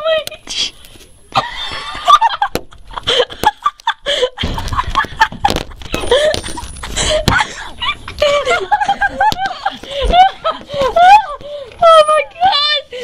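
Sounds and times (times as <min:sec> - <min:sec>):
people laughing: 0:01.3 - 0:11.4.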